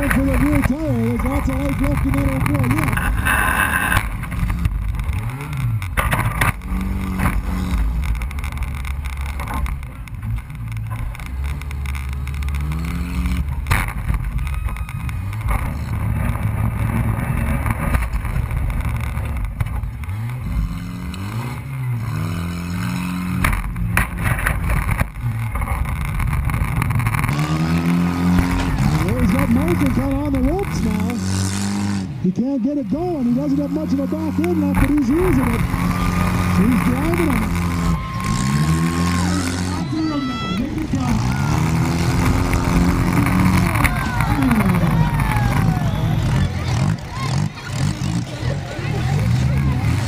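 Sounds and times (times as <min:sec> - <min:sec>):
car engines revving: 0:00.0 - 0:50.0
car bodies crashing: 0:05.8 - 0:12.3, 0:27.9 - 0:30.9.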